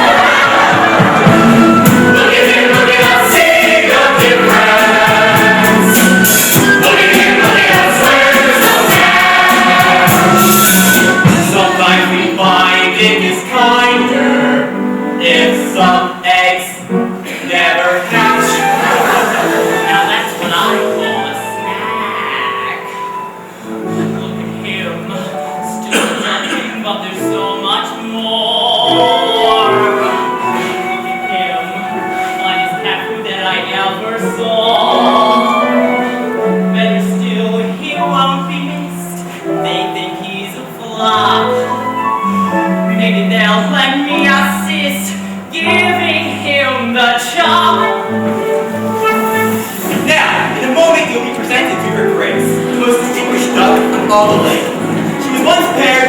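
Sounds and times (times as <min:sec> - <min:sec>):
cast singing in chorus: 0:00.0 - 0:20.5
musical accompaniment: 0:00.0 - 0:56.0.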